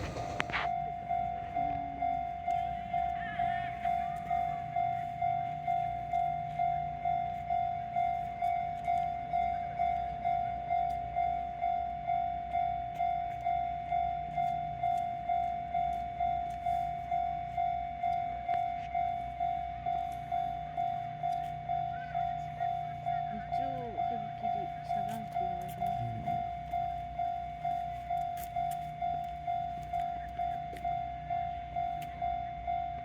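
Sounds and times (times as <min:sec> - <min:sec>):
low rumble: 0:00.0 - 0:00.8
level-crossing warning bell ringing: 0:00.0 - 0:33.0.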